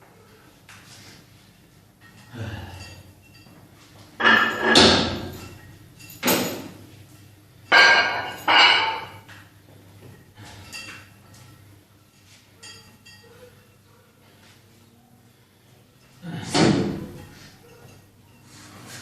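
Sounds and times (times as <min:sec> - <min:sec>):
gym weights clanking: 0:04.2 - 0:06.8, 0:07.7 - 0:09.3.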